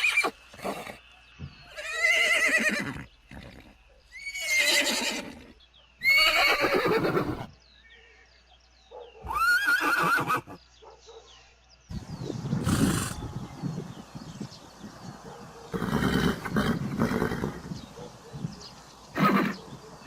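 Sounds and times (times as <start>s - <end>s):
horses neighing: 1.7s - 7.5s, 9.2s - 10.6s, 12.6s - 13.5s, 15.7s - 18.2s, 18.8s - 20.0s.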